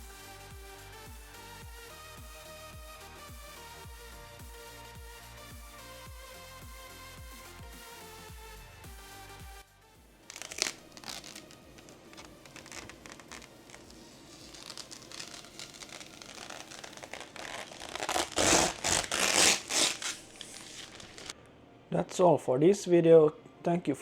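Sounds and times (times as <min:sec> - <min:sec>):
rustling and crinkling handling noise: 0:10.2 - 0:21.4.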